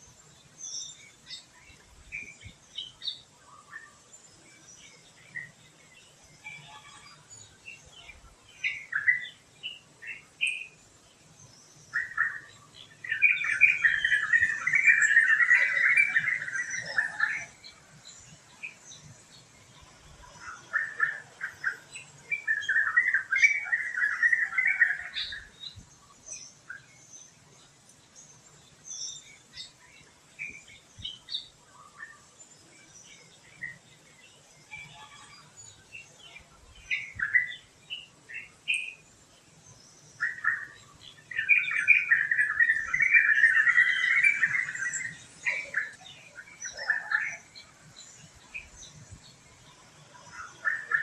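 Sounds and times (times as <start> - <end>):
birds chirping and calling: 0.0 - 51.0.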